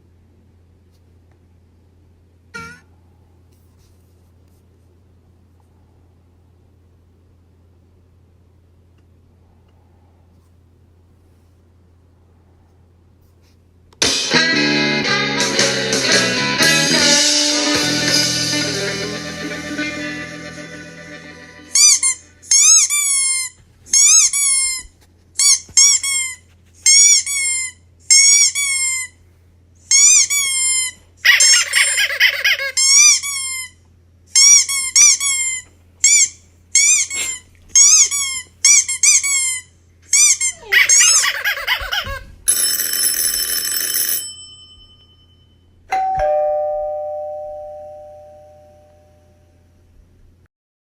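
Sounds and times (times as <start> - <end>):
high squeaky chirps: 34.4 - 42.2
dense buzzing ring: 44.3 - 49.6
bell-like ding: 44.4 - 49.3.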